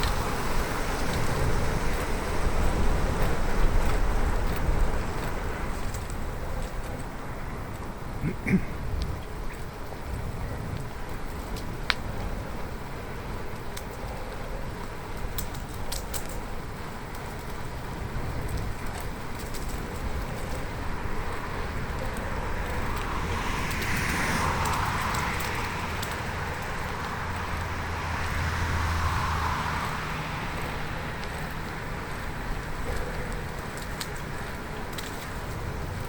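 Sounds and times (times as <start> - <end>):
bicycle road noise: 0.0 - 36.0
motor traffic passing: 0.0 - 36.0.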